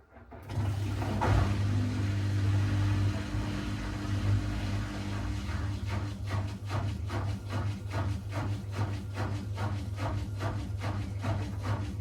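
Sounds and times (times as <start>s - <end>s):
washing machine motor hum: 0.4s - 12.0s.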